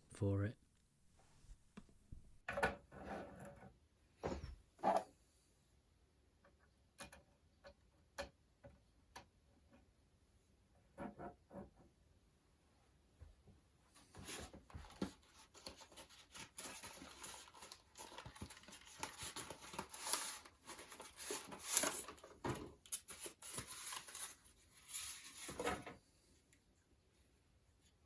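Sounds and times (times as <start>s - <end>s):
plastic items rustling and clicking: 14.2s - 26.0s.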